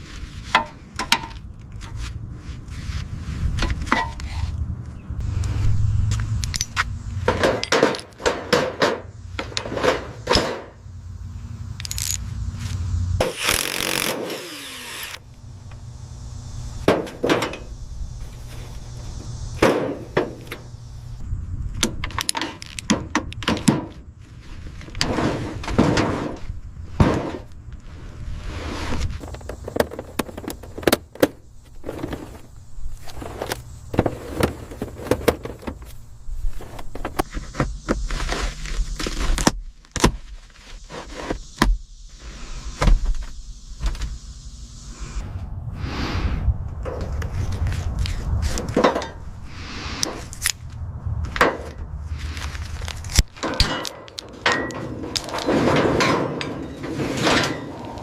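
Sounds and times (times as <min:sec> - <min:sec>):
low steady rumble: 0:01.3 - 0:07.7, 0:14.5 - 0:22.8
knocks and clanks on metal: 0:07.2 - 0:10.8, 0:16.8 - 0:17.7, 0:19.6 - 0:20.6, 0:25.0 - 0:26.4, 0:48.7 - 0:49.2, 0:53.4 - 0:57.8
harsh rasping burst: 0:13.2 - 0:15.2.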